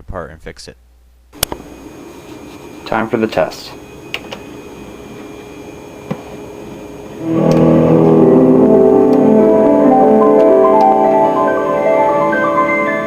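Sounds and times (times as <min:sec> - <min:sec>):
small click: 0:01.4 - 0:01.6
sustained keyboard music: 0:03.7 - 0:13.0.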